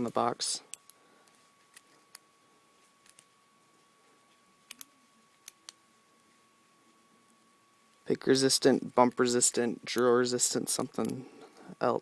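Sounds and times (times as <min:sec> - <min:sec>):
faint high whine: 0:00.0 - 0:12.0.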